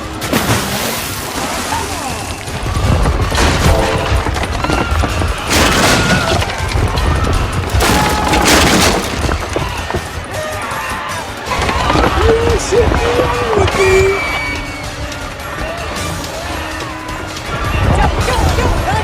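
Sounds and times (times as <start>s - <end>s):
explosion booms and crashing: 5.4s - 9.8s
music: 9.9s - 19.0s.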